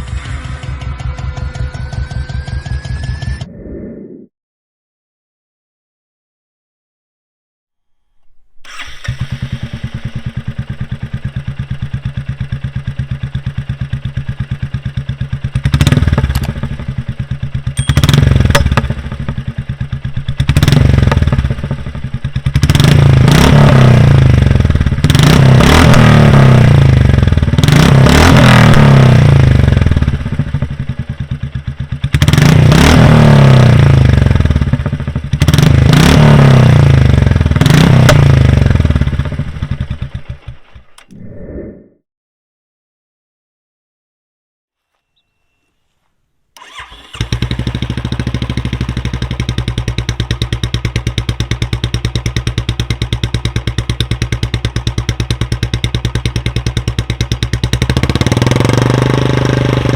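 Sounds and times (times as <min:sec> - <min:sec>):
motorcycle engine revving: 0:08.6 - 0:41.0, 0:46.6 - 0:59.9
motorcycle engine thumping idle: 0:09.6 - 0:23.0, 0:38.0 - 0:41.0, 0:46.6 - 0:58.4.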